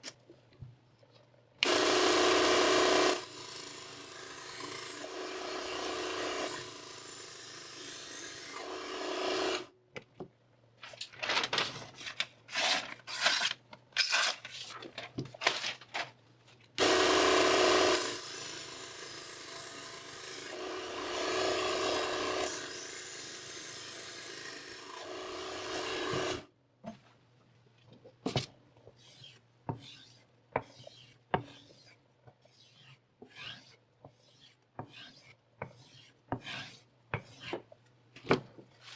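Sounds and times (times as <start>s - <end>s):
grinder grinding knife blade: 29.0s - 37.6s
steel scraping on abrasive: 29.0s - 37.6s.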